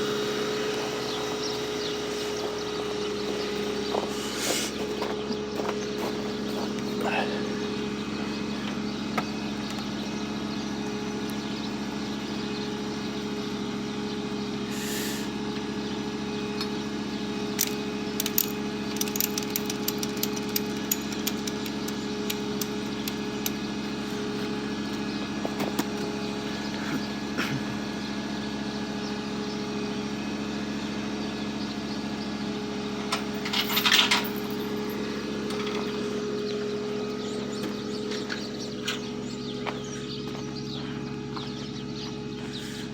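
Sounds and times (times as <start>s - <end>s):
knocking car engine drone: 0.0s - 42.9s
clicks and rattles: 17.6s - 23.6s, 33.0s - 34.8s.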